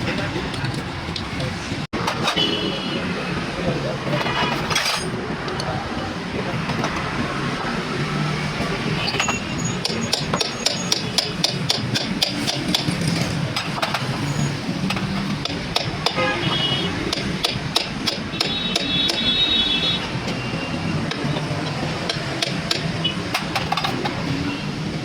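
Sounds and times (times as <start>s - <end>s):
voices: 0.0s - 11.5s
vehicle noise: 0.0s - 25.0s.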